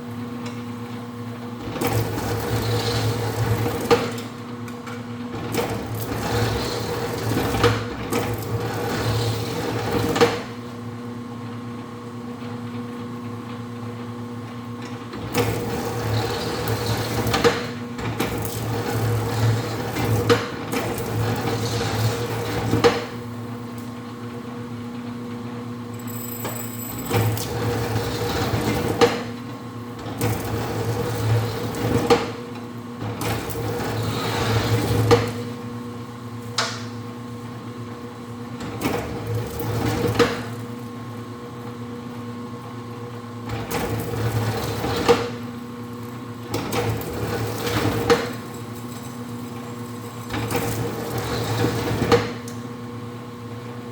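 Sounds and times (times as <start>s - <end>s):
wire stripping machine motor hum: 0.4s - 10.8s, 13.5s - 53.9s
second machine tone: 25.9s - 27.6s.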